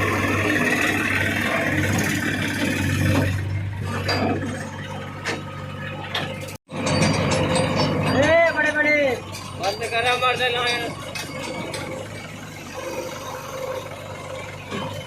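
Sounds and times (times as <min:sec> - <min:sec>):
diesel engine running: 0:00.0 - 0:15.0
metallic clanks and knocks: 0:02.6 - 0:12.4.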